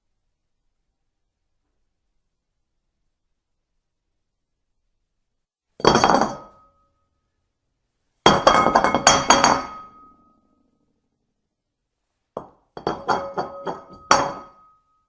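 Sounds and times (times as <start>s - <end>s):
dishes clinking: 5.8s - 6.6s, 8.3s - 10.1s, 12.4s - 14.6s.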